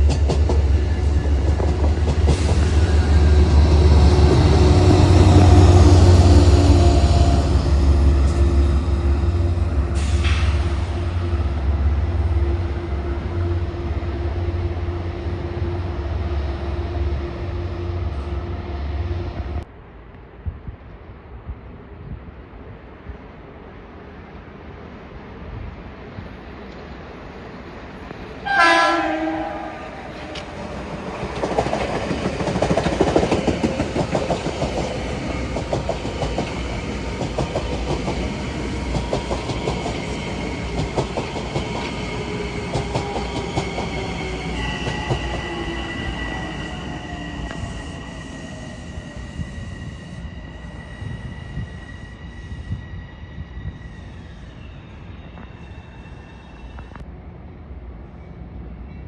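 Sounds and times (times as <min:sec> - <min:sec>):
train horn blast: 0:28.4 - 0:30.3
train wheels clacking over rail joints: 0:30.2 - 0:45.6.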